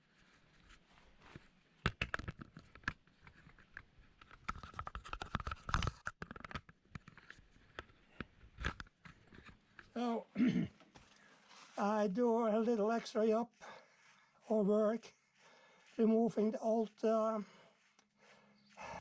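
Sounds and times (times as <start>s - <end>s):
tools and parts clicking and rattling: 1.9s - 9.9s.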